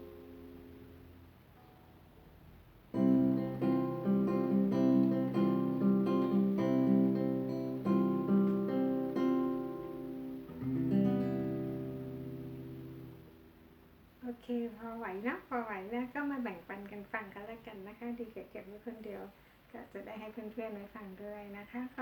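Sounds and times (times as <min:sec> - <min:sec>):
acoustic guitar: 0:00.0 - 0:14.2.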